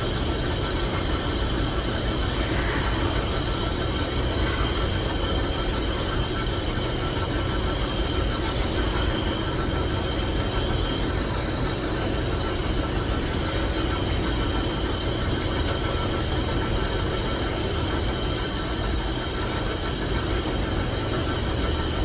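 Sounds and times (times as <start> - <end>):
metal lathe droning: 0.0 - 21.7
brief hisses: 2.2 - 4.7.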